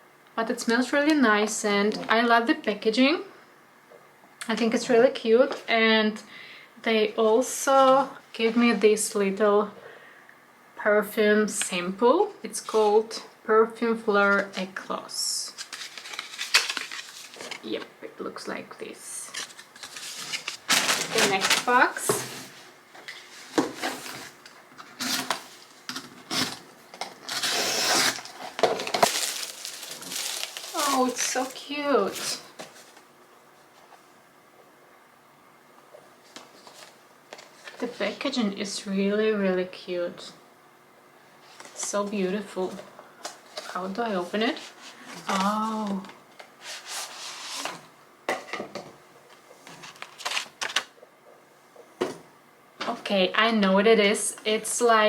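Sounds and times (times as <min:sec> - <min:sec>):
packaging scraping and rustling: 0:15.5 - 0:17.7, 0:19.2 - 0:33.0, 0:46.6 - 0:47.9, 0:49.6 - 0:50.9.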